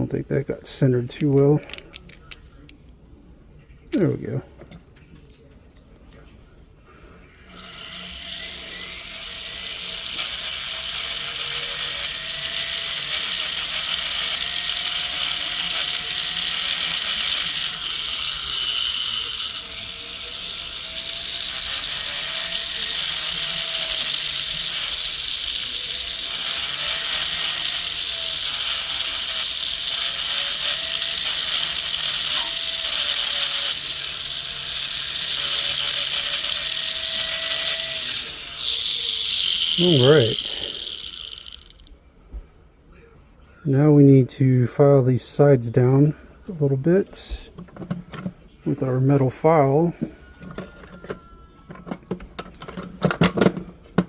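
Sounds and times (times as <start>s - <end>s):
rotary tool motor whine: 7.4s - 41.9s
gritty grinding on metal: 7.6s - 41.9s.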